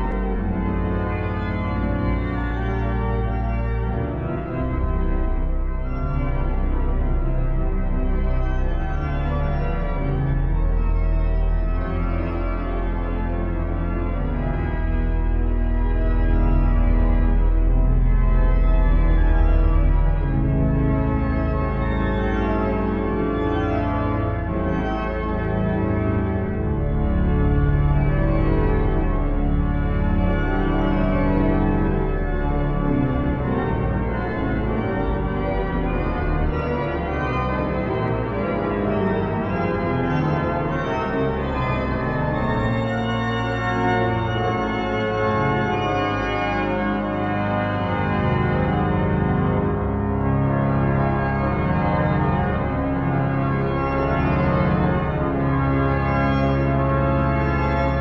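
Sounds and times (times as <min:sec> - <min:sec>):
organ playing sustained chords: 0:00.0 - 0:58.0.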